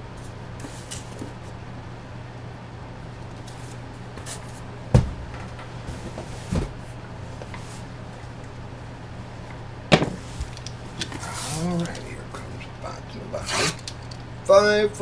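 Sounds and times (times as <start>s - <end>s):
steady low hum: 0.0s - 15.0s
cardboard boxes knocking on table: 4.9s - 6.8s, 9.9s - 10.6s.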